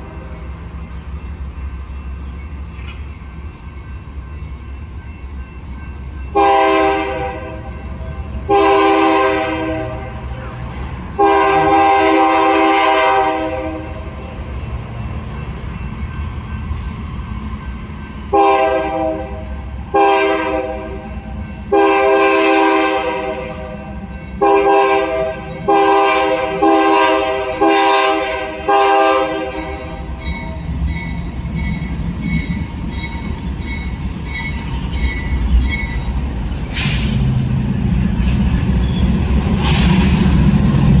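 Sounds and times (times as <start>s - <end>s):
freight train rumbling: 0.0s - 41.0s
locomotive air horn blasts: 6.3s - 7.8s, 8.4s - 10.4s, 11.2s - 14.1s, 18.3s - 30.0s
high ringing pattern: 29.6s - 36.2s.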